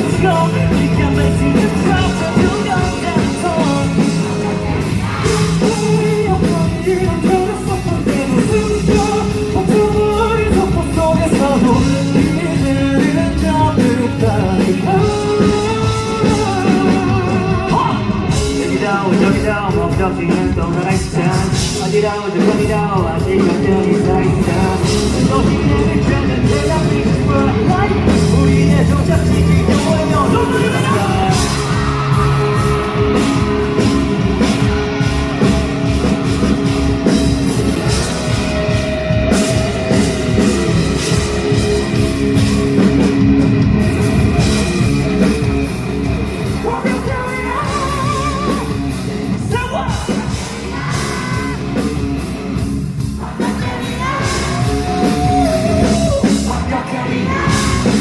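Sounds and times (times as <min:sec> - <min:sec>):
person singing: 0:00.0 - 0:41.6, 0:46.6 - 0:51.9, 0:53.0 - 0:58.0
live rock band music: 0:00.0 - 0:58.0
person shouting: 0:50.7 - 0:51.7.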